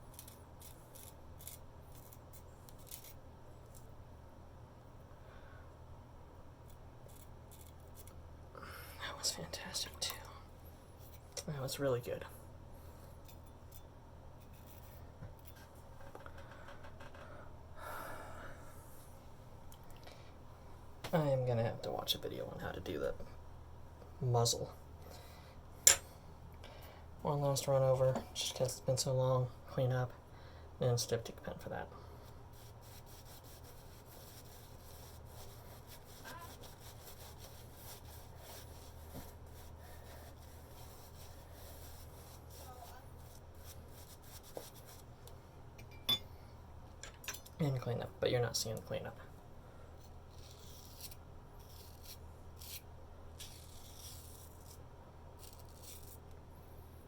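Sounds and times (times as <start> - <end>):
steady low hum: 0.0 - 57.0
razor scraping skin: 0.1 - 3.2, 7.0 - 8.2, 32.5 - 45.1, 50.0 - 52.8, 53.4 - 54.8, 55.4 - 56.2.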